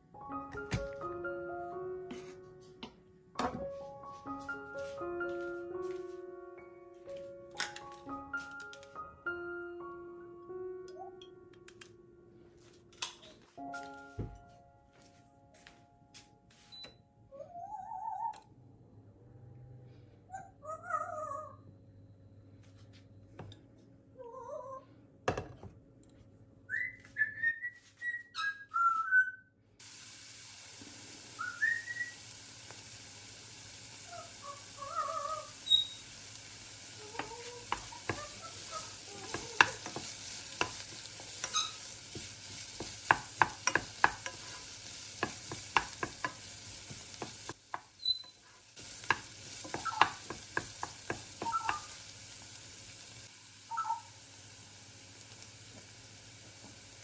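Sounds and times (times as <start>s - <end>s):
parrot whistling: 26.7s - 29.5s, 31.4s - 32.2s, 34.1s - 36.0s, 41.5s - 41.8s, 49.8s - 50.2s, 51.4s - 51.9s, 53.7s - 54.2s
food sizzling in a pan: 29.8s - 57.0s
utensil tapping on a pan: 37.1s - 47.9s, 48.8s - 52.0s.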